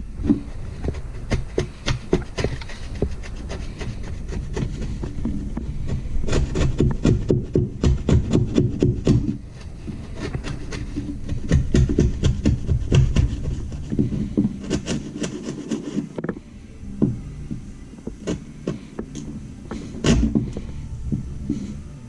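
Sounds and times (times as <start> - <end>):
knocking and scraping on wood: 0.2 - 16.4, 17.0 - 21.6
heavy thump: 4.6 - 15.3, 17.0 - 21.6.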